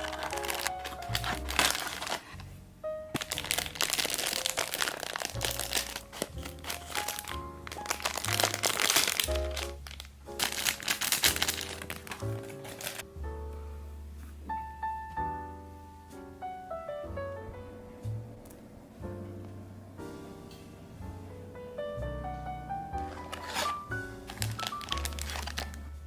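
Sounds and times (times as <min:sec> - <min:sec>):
plastic packaging crinkling: 0:00.0 - 0:02.5, 0:03.1 - 0:13.1, 0:23.0 - 0:26.0
light background piano music: 0:00.0 - 0:26.0.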